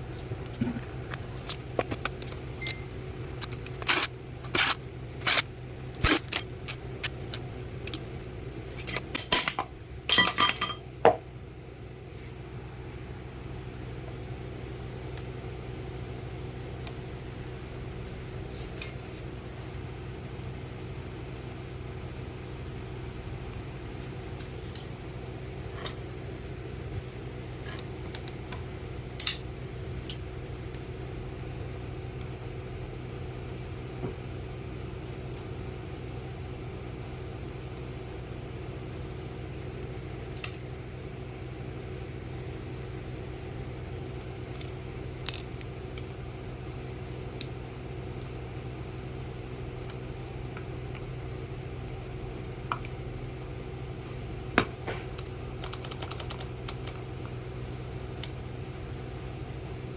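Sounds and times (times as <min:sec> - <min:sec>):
steady low hum: 0:00.0 - 0:59.9
metallic clicks of tool parts: 0:03.4 - 0:05.4, 0:40.4 - 0:40.6.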